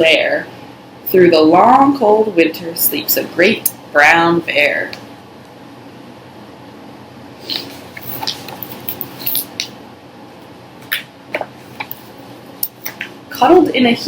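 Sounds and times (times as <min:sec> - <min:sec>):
paper pages rustling: 0:07.5 - 0:09.4.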